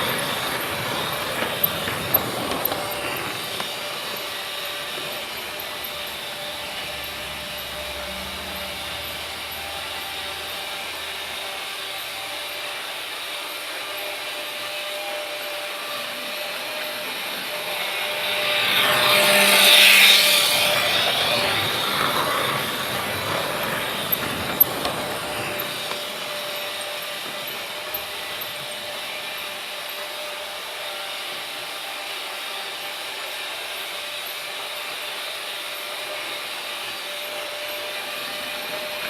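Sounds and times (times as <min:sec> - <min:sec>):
metallic squeal from wheels and rails: 0:00.0 - 0:12.9, 0:16.3 - 0:31.0
freight train rolling by: 0:00.0 - 0:39.0.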